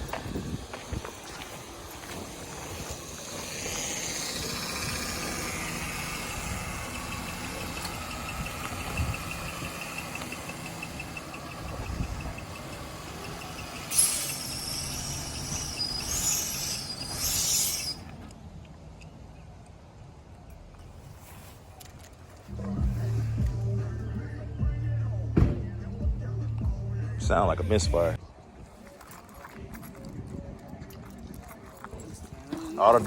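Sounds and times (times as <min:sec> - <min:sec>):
hissing rush: 0:00.0 - 0:07.8, 0:12.7 - 0:18.2
car engine running: 0:00.0 - 0:15.9, 0:22.4 - 0:28.2.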